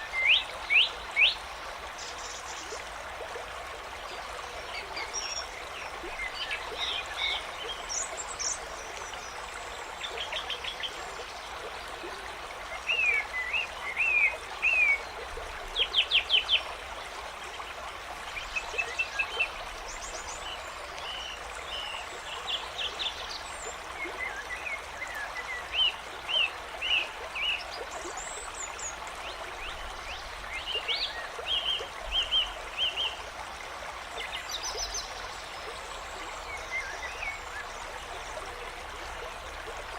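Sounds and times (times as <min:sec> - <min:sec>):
stream trickling: 0:00.0 - 0:39.9.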